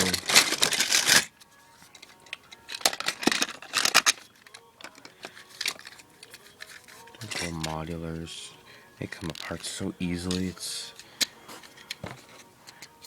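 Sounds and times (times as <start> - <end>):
toy parts clicking and rattling: 0.0 - 7.9, 9.2 - 13.0.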